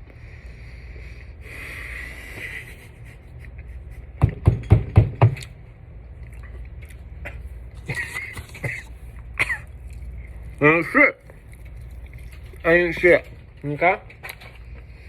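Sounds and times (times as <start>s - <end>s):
chewing chicken wing: 6.1s - 15.0s.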